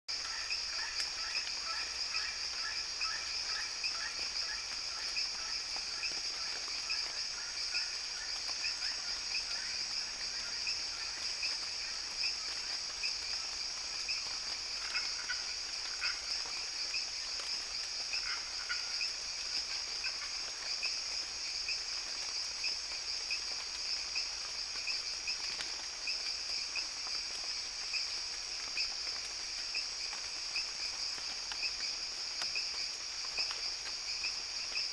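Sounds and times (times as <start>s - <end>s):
frogs calling in rapid pulses: 0.2s - 34.9s.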